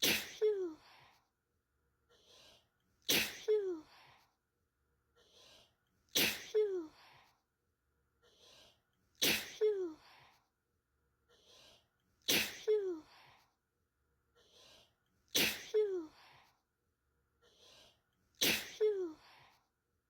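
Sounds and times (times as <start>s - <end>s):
person sneezing: 0.0s - 1.0s, 3.0s - 4.1s, 6.1s - 7.2s, 9.2s - 10.2s, 12.2s - 13.3s, 15.3s - 16.3s, 18.4s - 19.4s.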